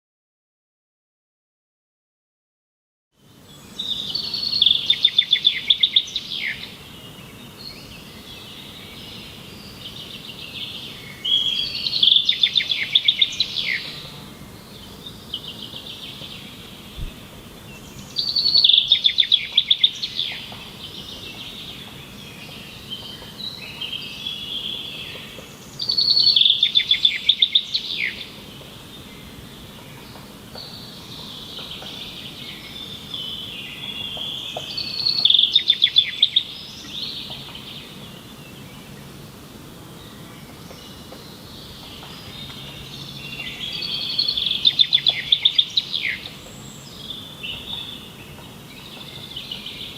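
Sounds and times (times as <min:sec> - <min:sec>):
background bird chirping: 0:03.2 - 0:49.9
songbird trilling: 0:03.8 - 0:06.7, 0:10.6 - 0:14.1, 0:17.8 - 0:21.8, 0:22.5 - 0:28.4, 0:29.9 - 0:38.0, 0:41.6 - 0:48.1.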